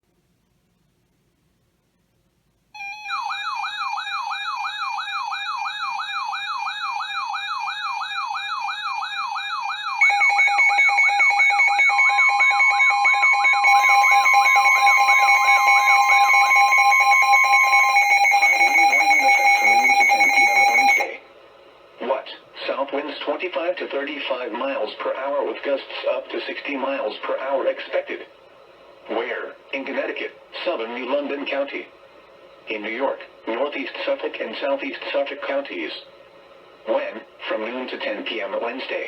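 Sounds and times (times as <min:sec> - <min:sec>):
siren-like electronic warble: 0:02.8 - 0:21.2
steady alarm tones: 0:02.8 - 0:21.3.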